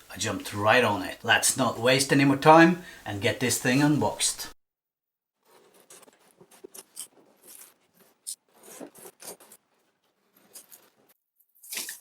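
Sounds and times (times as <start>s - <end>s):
cardboard scraping and rustling: 5.4s - 11.2s.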